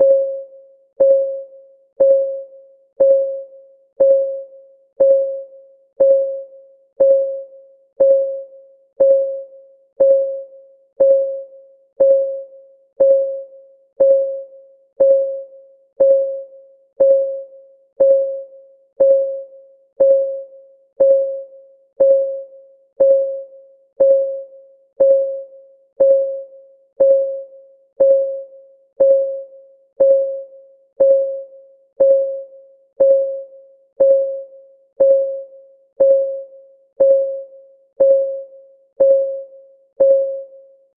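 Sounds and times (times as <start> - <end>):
timer ticking: 2.0 - 2.4, 3.0 - 3.4, 4.0 - 4.4, 5.0 - 5.4, 6.0 - 6.4, 7.0 - 7.4, 8.0 - 8.4, 9.0 - 9.4, 10.0 - 10.4, 11.0 - 11.4, 12.0 - 12.4, 13.0 - 13.4, 14.0 - 14.4, 15.0 - 15.4, 16.0 - 16.4, 17.0 - 17.4, 18.0 - 18.4, 19.0 - 19.4, 20.0 - 20.4, 21.0 - 21.4, 22.0 - 22.4, 23.0 - 23.4, 24.0 - 24.4, 25.0 - 25.4, 26.0 - 26.4, 27.0 - 27.4, 28.0 - 28.4, 29.0 - 29.4, 30.0 - 30.4, 31.0 - 31.4, 32.0 - 32.4, 33.0 - 33.4, 34.0 - 34.4, 35.0 - 35.4, 36.0 - 36.4, 37.0 - 37.4, 38.0 - 38.4, 39.0 - 39.4.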